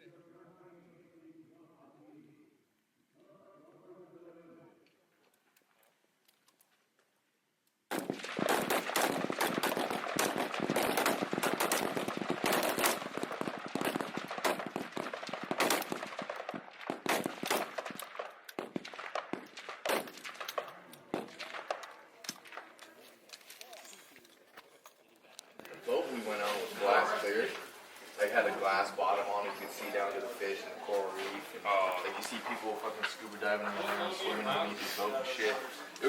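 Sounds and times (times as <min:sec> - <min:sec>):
rifles firing: 0:07.9 - 0:22.9.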